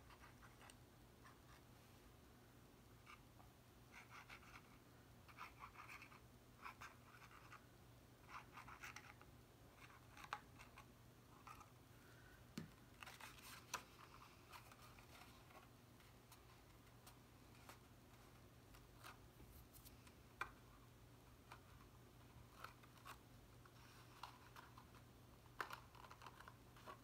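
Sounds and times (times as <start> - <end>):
cardstock scratching and rustling: 13.0 - 20.0, 21.4 - 27.0.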